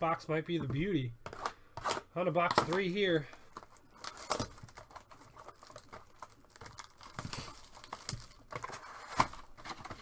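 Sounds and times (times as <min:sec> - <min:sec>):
plastic wrapping crinkling and tearing: 0:02.5 - 0:10.0.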